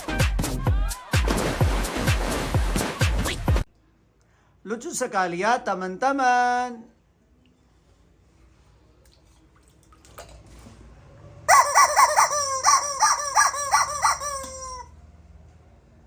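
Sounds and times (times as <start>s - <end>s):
fowl calling loudly: 11.5s - 14.9s.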